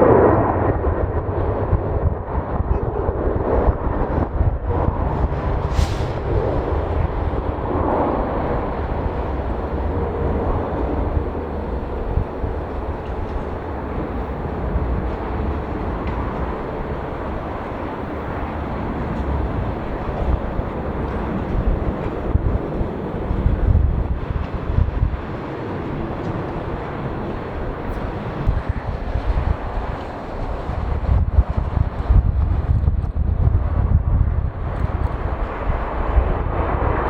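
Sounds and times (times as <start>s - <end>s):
jet engines rumbling: 0.0s - 37.0s
brief sharp hiss: 5.7s - 6.2s.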